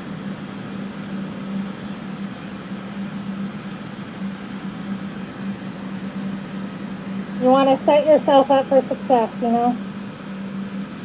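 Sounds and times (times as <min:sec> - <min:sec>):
ventilation fans whooshing: 0:00.0 - 0:11.0.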